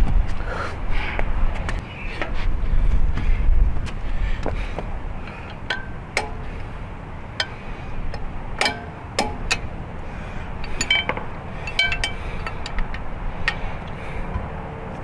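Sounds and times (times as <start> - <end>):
metal hand tools clinking: 10.6 - 13.6.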